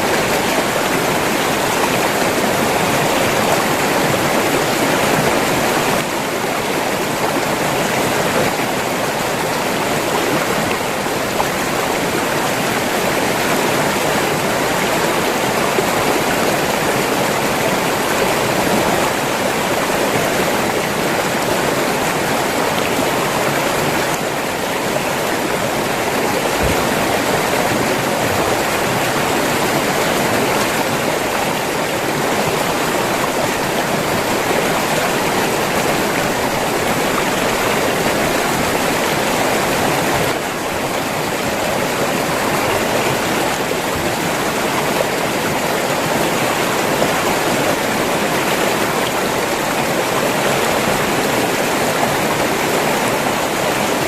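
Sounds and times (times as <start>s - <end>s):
river water rushing over rocks: 0.0s - 54.0s.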